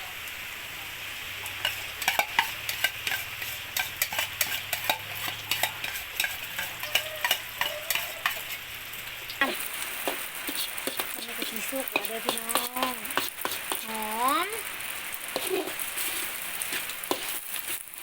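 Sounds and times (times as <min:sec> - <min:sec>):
eggs sizzling in hot oil: 0:00.0 - 0:18.0
crackling spatter pops: 0:08.3 - 0:18.0.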